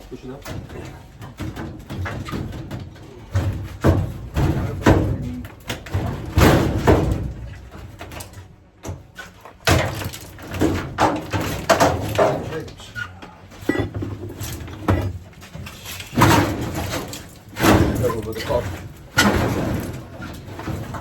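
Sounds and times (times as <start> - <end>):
metal bangs and scraping: 0.0 - 21.0
loud knocks: 1.3 - 7.6.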